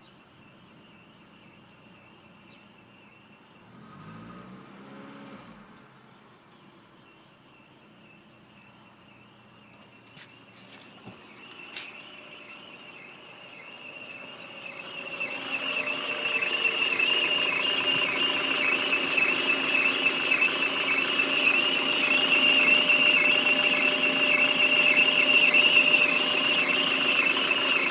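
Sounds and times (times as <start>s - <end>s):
high-pitched whistling squeal: 8.6s - 27.9s
car engine running: 9.9s - 27.9s.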